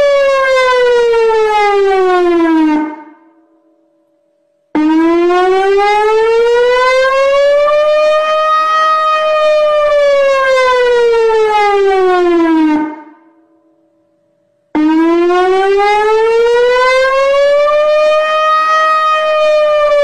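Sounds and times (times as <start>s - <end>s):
civil defence siren wailing: 0.0s - 3.8s, 4.7s - 20.0s.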